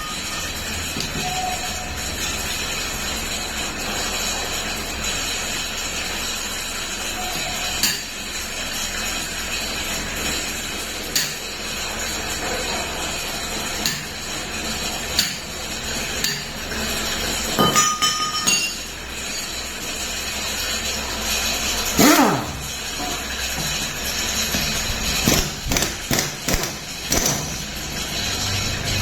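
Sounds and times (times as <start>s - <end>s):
metallic ringing: 0.0s - 3.5s, 17.6s - 19.7s
metal tools knocking and clinking: 17.6s - 19.6s.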